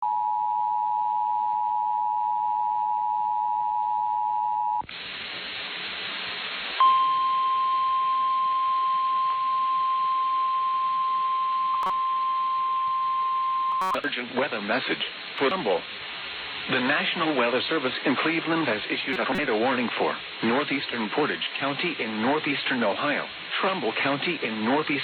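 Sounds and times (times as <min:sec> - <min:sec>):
static hiss: 0:04.8 - 0:07.0, 0:13.8 - 0:25.0
two-tone attention signal: 0:06.8 - 0:14.0
steady warning alarm tone: 0:13.7 - 0:14.0.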